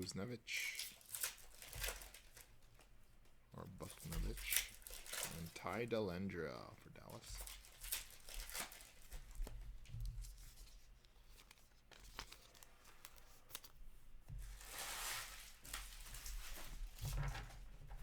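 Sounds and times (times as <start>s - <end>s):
wrappers crinkling and tearing: 0.6s - 2.7s, 3.8s - 5.7s, 7.0s - 9.6s, 10.2s - 13.8s
cards clicking when handled: 11.3s - 13.8s.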